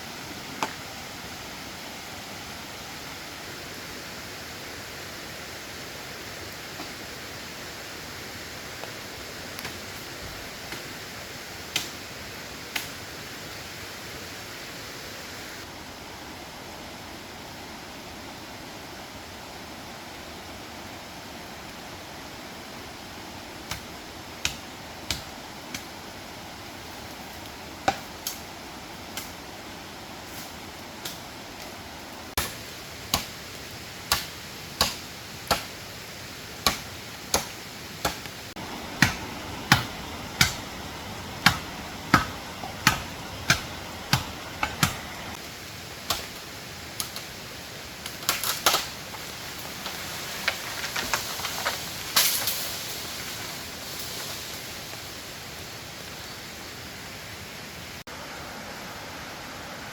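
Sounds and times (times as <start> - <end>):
hand tool striking wood: 39.0 - 40.6, 41.4 - 45.1.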